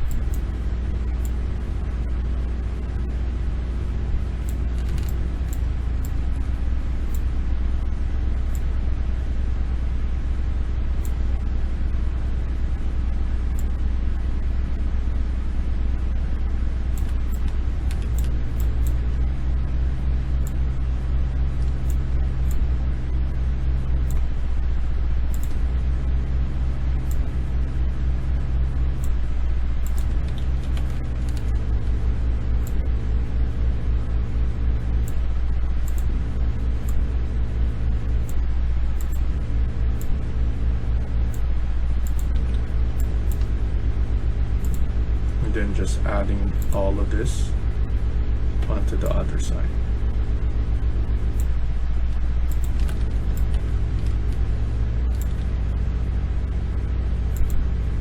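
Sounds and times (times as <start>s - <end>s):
computer mouse clicks: 0.0s - 0.6s, 4.4s - 6.2s, 13.5s - 13.8s, 17.0s - 19.1s, 21.6s - 22.7s, 24.0s - 24.3s, 25.3s - 25.7s, 27.0s - 27.4s, 29.0s - 29.2s, 29.8s - 31.9s, 35.0s - 36.2s, 39.0s - 40.3s, 41.3s - 43.6s, 44.6s - 44.9s, 46.5s - 47.0s, 52.5s - 54.5s, 55.1s - 55.6s, 57.3s - 57.7s
steady low hum: 0.0s - 58.0s.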